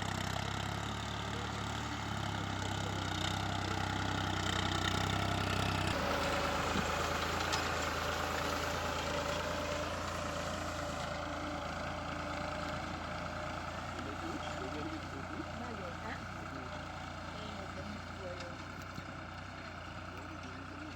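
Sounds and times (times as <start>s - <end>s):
tractor engine running: 0.0s - 20.9s.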